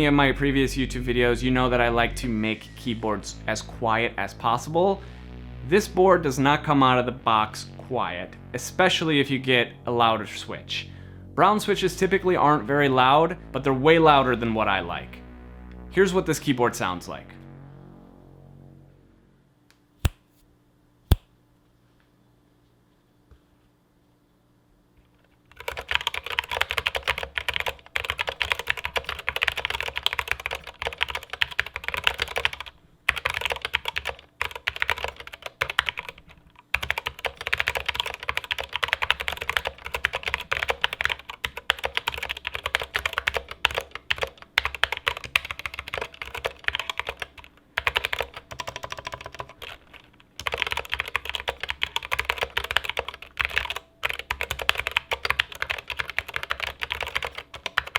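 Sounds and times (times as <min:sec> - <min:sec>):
mechanical keyboard typing: 0:25.5 - 0:57.9.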